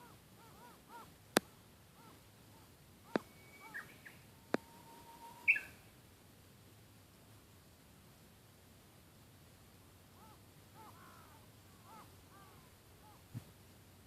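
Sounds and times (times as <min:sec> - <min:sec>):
crows cawing faintly: 0:00.0 - 0:05.8, 0:10.1 - 0:13.5
bird singing whistled notes: 0:03.1 - 0:05.9.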